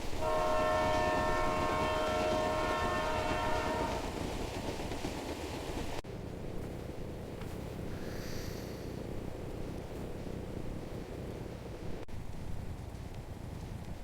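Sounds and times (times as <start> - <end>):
moving train rumble: 0.0 - 14.0
train horn chord: 0.1 - 4.2.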